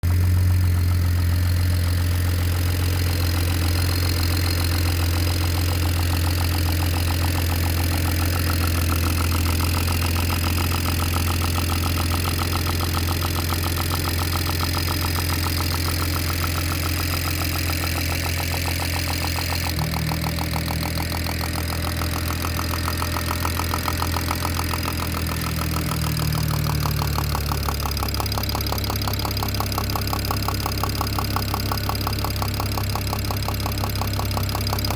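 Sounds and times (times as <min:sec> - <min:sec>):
car engine idling: 0:00.0 - 0:34.9
rapid engine knocking tick: 0:00.0 - 0:34.9.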